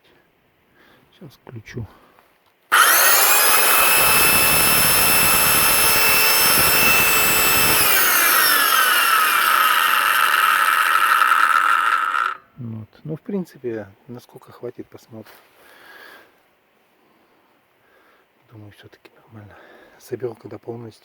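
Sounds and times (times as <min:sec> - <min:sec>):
circular saw whining: 0:02.7 - 0:12.4.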